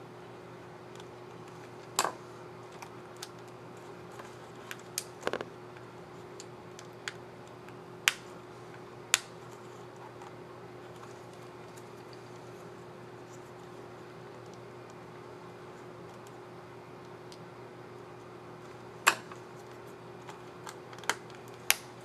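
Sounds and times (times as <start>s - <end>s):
plastic keycap clicks: 5.2s - 5.4s.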